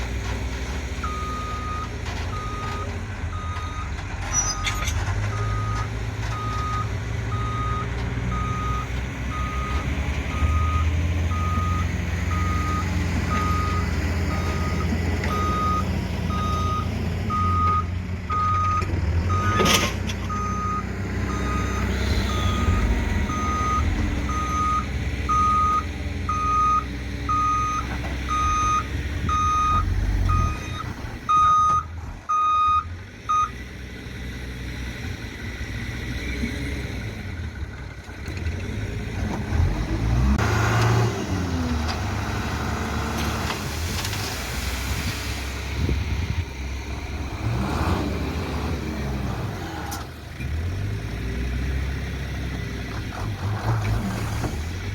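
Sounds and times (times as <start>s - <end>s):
diesel engine running: 0.0s - 54.9s
back-up alarm beeping: 20.3s - 33.5s.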